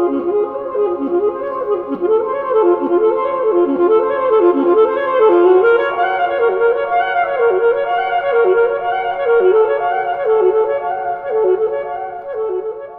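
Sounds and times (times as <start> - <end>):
wind instrument melody: 0.0 - 12.9.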